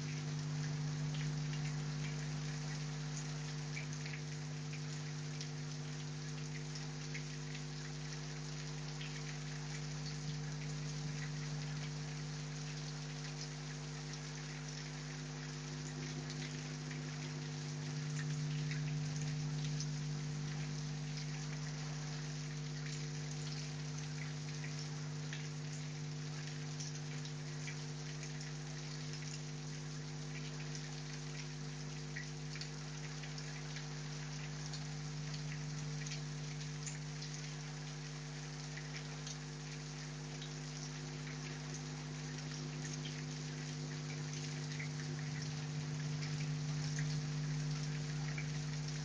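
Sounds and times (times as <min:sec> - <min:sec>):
steady low hum: 0:00.0 - 0:29.4
raindrops ticking on a surface: 0:00.0 - 0:49.0.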